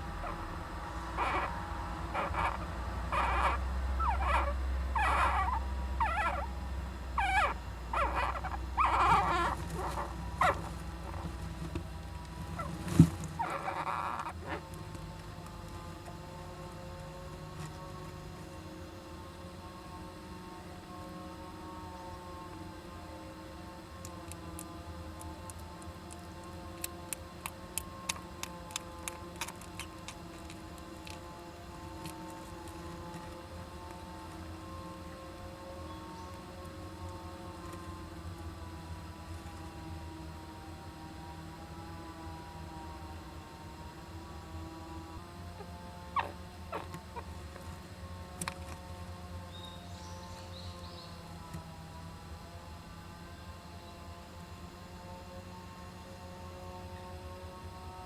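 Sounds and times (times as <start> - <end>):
steady hum: 0.0 - 58.0
flying squirrel squeaky calls: 0.2 - 0.4, 1.0 - 6.6, 7.2 - 11.3, 13.4 - 14.8, 45.6 - 47.5.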